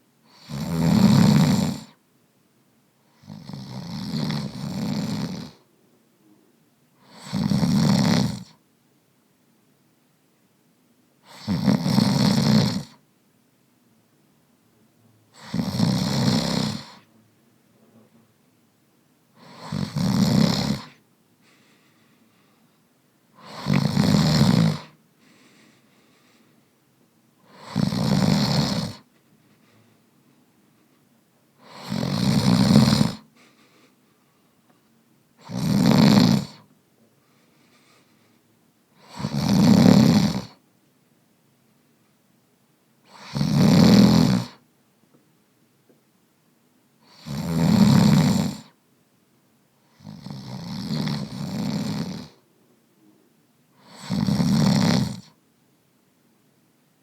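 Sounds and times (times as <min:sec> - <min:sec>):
man snoring: 0:00.3 - 0:02.0, 0:03.1 - 0:05.7, 0:07.0 - 0:08.5, 0:11.2 - 0:13.0, 0:15.3 - 0:17.1, 0:19.4 - 0:21.0, 0:23.4 - 0:25.0, 0:27.4 - 0:29.1, 0:31.6 - 0:33.3, 0:35.4 - 0:36.7, 0:39.0 - 0:40.6, 0:43.1 - 0:44.6, 0:47.0 - 0:48.8, 0:49.9 - 0:52.4, 0:53.8 - 0:55.3.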